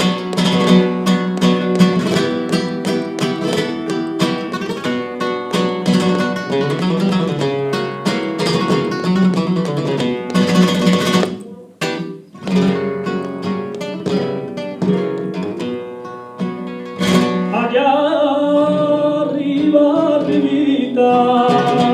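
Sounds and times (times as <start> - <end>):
flamenco guitar playing: 0.0 - 21.9.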